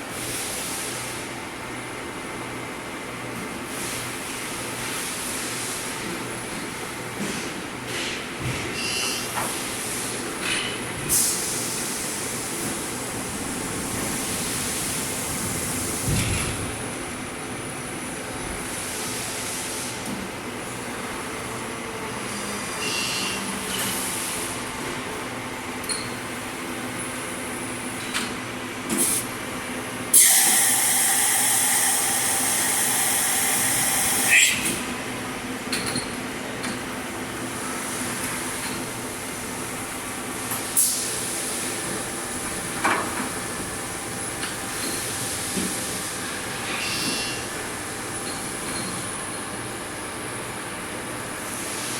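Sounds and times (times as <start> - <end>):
loud hiss: 30.1 - 34.7
milling machine hum: 30.1 - 35.5.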